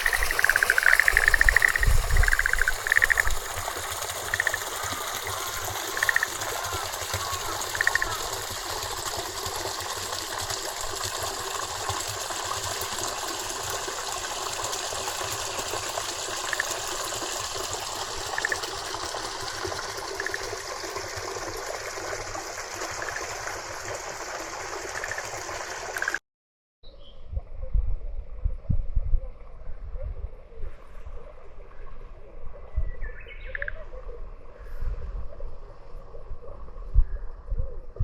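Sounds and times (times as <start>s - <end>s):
stream flowing: 0.0s - 26.2s.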